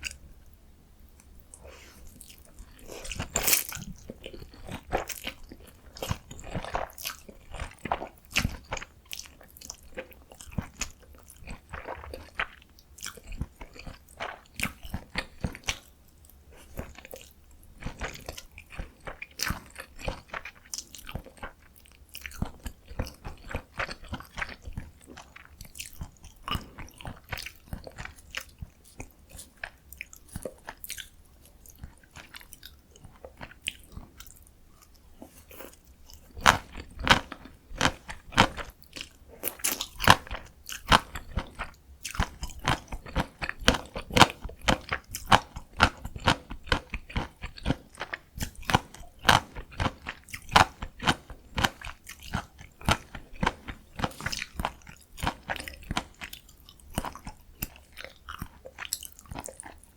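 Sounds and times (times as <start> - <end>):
chewing noodles with mouth clicks: 0.0 - 59.9.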